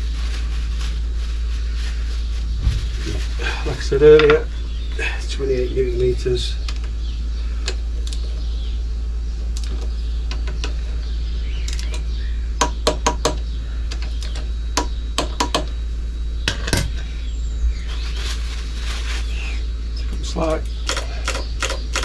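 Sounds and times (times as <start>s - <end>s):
steady low hum: 0.0s - 22.0s
torque wrench clicks: 20.1s - 22.0s.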